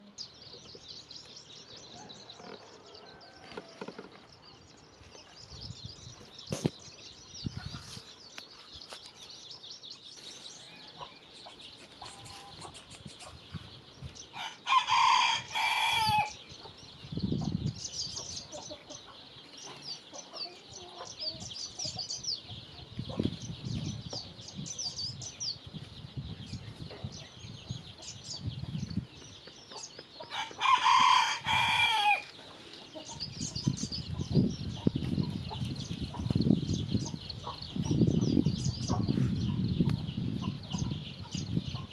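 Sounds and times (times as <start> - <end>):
small birds chirping: 0.0 - 41.9
rooster crowing: 14.4 - 16.4, 30.3 - 32.3.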